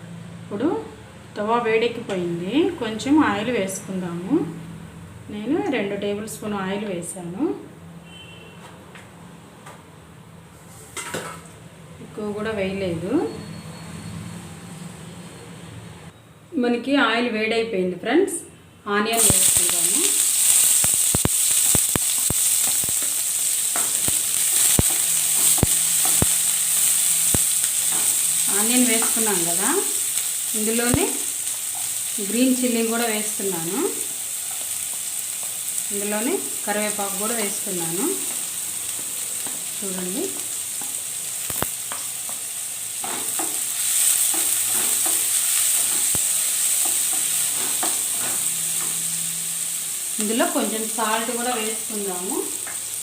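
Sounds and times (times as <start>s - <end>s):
onions sizzling in oil: 19.1s - 53.0s
oil popping and crackling: 19.2s - 32.2s, 40.3s - 49.0s.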